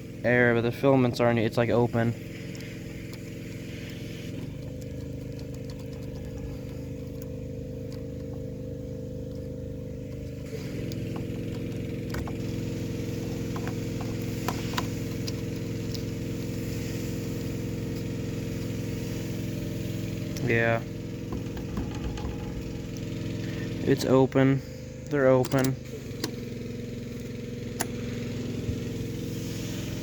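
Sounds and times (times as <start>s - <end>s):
electrical hum: 0.0s - 30.0s.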